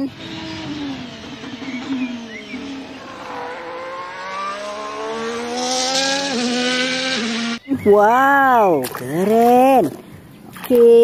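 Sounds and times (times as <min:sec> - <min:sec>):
race car engine accelerating: 0:00.0 - 0:07.7.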